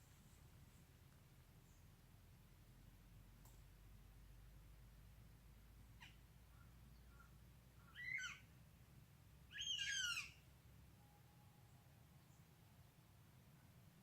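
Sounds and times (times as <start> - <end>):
bird harsh call: 7.8 - 8.4, 9.5 - 10.4
faint low hum: 10.3 - 14.0.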